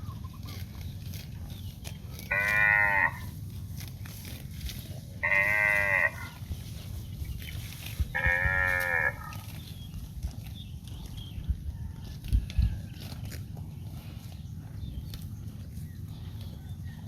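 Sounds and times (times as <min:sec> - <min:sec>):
cow mooing: 0:02.3 - 0:03.4, 0:05.2 - 0:06.4, 0:08.1 - 0:09.5.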